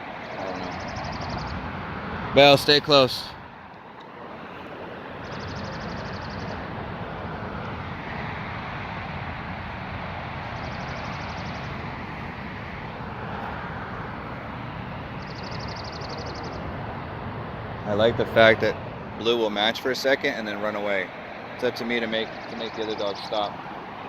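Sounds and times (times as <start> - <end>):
steady outdoor rumble: 0.0 - 24.0.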